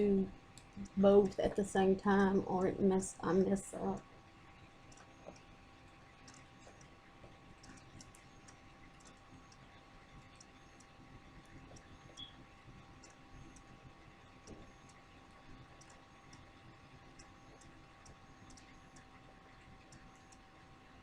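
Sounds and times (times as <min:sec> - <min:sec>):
faint steady hum: 0:00.0 - 0:21.0
faint clicks: 0:15.7 - 0:16.5, 0:17.1 - 0:19.1.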